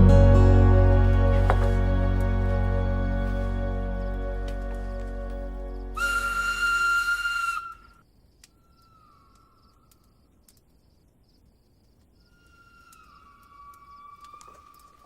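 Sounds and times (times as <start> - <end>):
steam locomotive whistle: 0.4 - 7.8
distant falling-pitch train whistles: 0.6 - 7.9.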